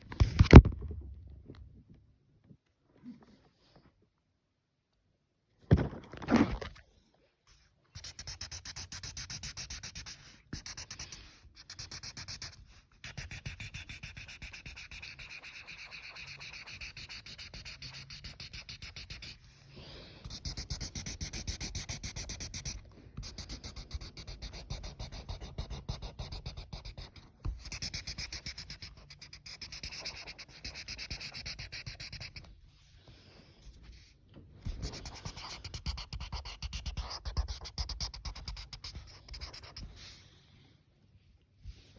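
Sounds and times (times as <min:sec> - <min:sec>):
drawing tool rubbing on paper: 0:08.0 - 0:19.5, 0:20.2 - 0:32.9, 0:34.7 - 0:40.2.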